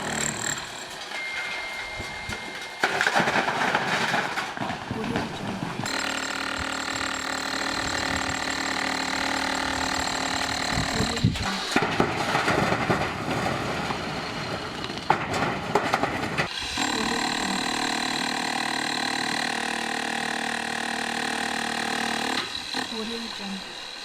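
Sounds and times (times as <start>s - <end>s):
power tool motor running: 0.0s - 0.9s, 5.8s - 11.8s, 16.5s - 24.0s.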